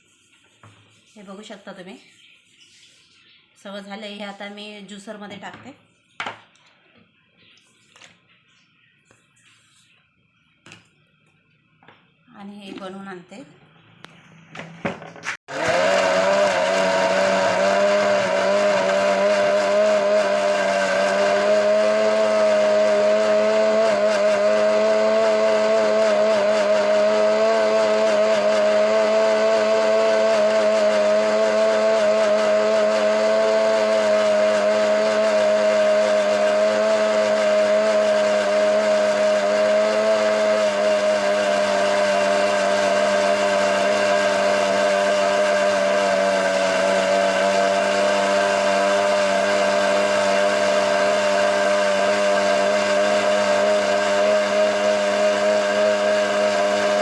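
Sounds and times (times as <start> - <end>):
mixer-grinder motor whine: 13.7 - 57.0.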